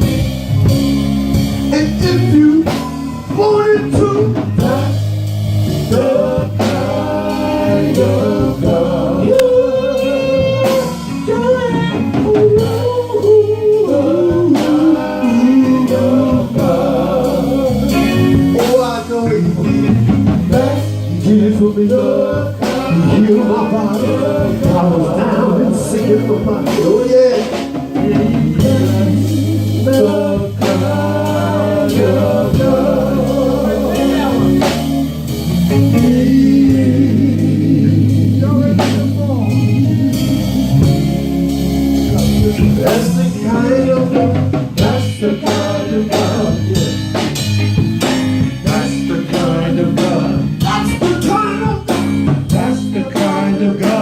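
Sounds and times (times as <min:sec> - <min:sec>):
gospel band playing: 0:00.0 - 0:54.0
person singing long notes: 0:05.9 - 0:41.3.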